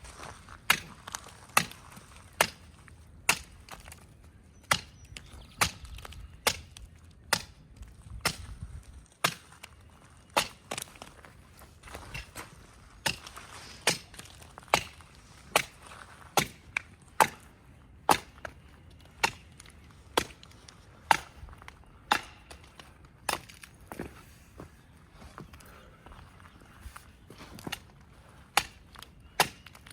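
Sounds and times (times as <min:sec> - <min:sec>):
axe chopping tree trunk: 0:00.6 - 0:04.0, 0:04.6 - 0:08.6, 0:09.2 - 0:09.7, 0:10.3 - 0:11.1, 0:13.0 - 0:18.6, 0:19.2 - 0:20.5, 0:21.1 - 0:21.3, 0:22.1 - 0:24.1, 0:28.5 - 0:29.9.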